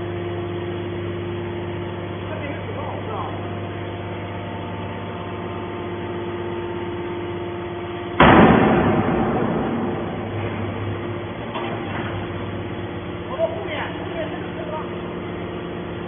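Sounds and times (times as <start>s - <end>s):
hydraulic baler humming: 0.0s - 16.0s
loud crash of metal: 8.2s - 11.2s.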